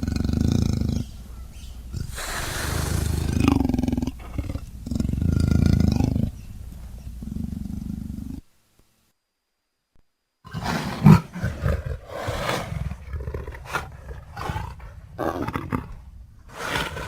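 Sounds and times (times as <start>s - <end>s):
low creature growl: 1.9s - 6.4s.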